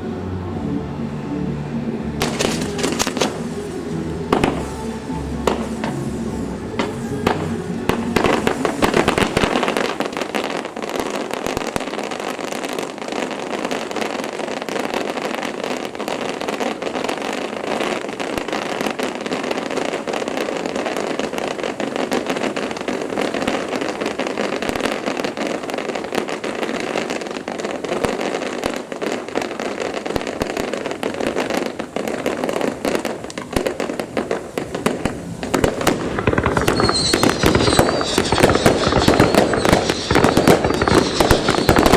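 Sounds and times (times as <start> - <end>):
fireworks deep booms: 0.0 - 14.2, 27.1 - 41.9
fireworks crackling and popping: 2.1 - 41.9.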